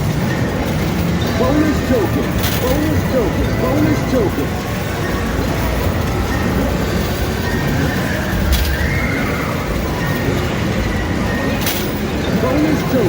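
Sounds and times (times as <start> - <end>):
arcade machine and crowd noise: 0.0 - 13.0.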